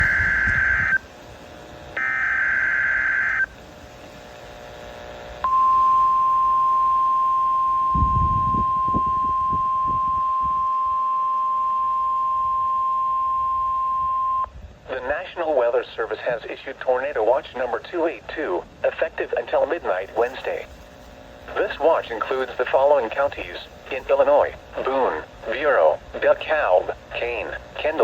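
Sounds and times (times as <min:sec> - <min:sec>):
screechy data burst: 0:00.0 - 0:03.6, 0:19.0 - 0:28.0
low rumbling noise: 0:00.0 - 0:04.6
steady warning alarm tone: 0:00.0 - 0:14.5, 0:19.6 - 0:25.5.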